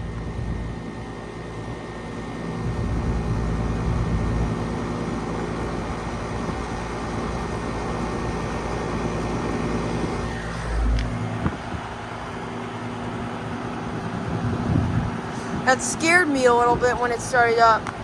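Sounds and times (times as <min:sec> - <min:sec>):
compressor hum: 0:00.0 - 0:18.0
condenser fan rushing: 0:00.0 - 0:18.0.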